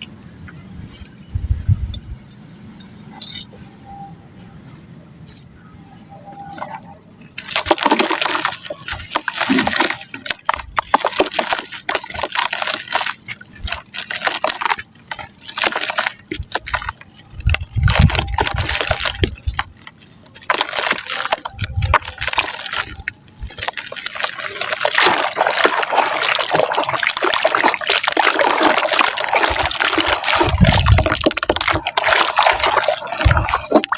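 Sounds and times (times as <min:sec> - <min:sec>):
mud crumbling in water: 0:07.3 - 0:33.9.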